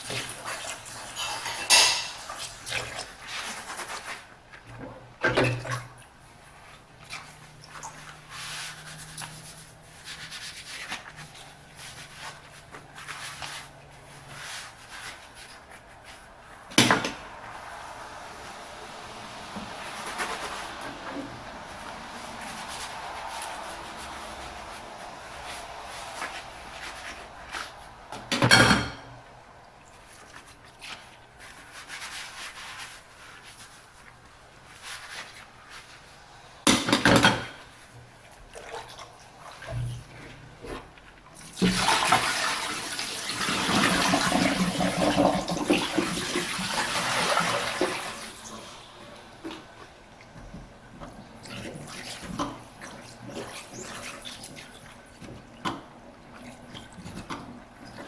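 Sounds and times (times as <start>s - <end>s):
water running and splashing: 0.0s - 4.4s, 5.2s - 58.0s
tap water stream: 0.0s - 8.3s, 15.0s - 31.3s, 36.6s - 58.0s
dishes being washed by hand: 0.0s - 58.0s.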